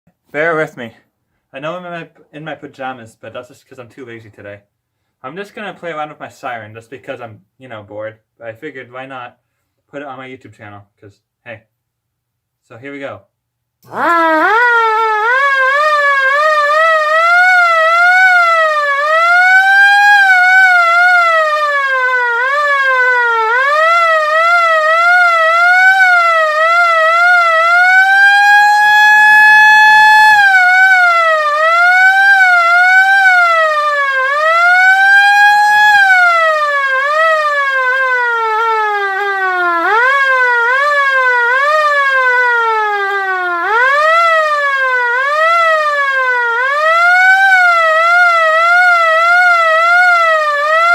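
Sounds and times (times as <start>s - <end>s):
air raid siren wailing: 13.8s - 50.9s.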